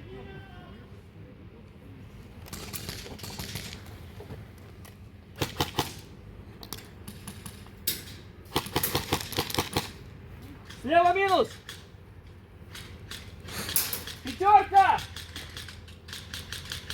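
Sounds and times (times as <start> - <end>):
rustling movement noise: 1.0 - 5.3
airsoft guns firing: 2.5 - 3.8, 5.4 - 6.1, 8.5 - 10.0, 12.7 - 16.9.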